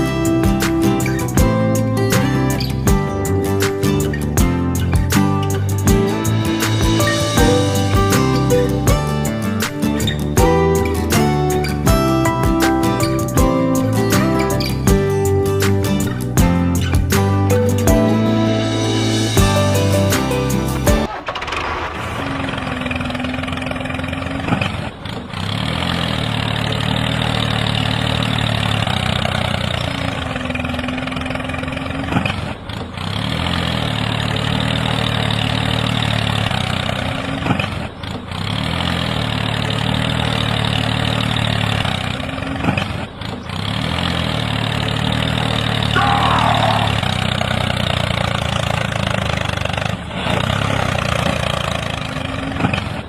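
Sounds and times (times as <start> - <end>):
tractor engine starting and idling: 0.0 - 53.0.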